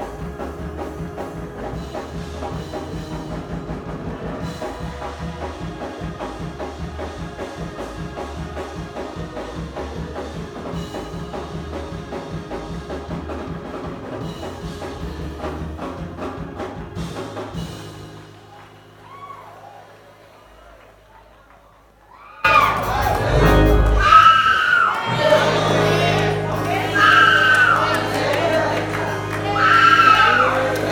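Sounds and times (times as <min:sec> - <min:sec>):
drum kit: 0:00.0 - 0:19.3, 0:22.5 - 0:30.9
live band music: 0:00.0 - 0:19.3, 0:22.5 - 0:30.9
bass: 0:00.0 - 0:20.3, 0:22.5 - 0:30.9.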